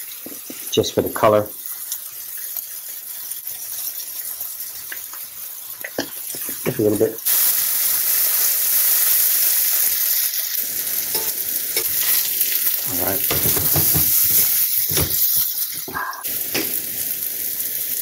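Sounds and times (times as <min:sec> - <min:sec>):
mushrooms sizzling in oil: 0:00.0 - 0:18.0
utensil scraping and knocking pan: 0:13.2 - 0:15.3.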